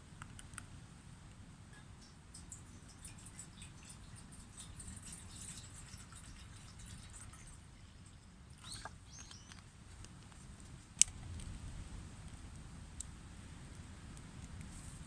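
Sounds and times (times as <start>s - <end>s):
short chirping calls: 8.6s - 9.6s.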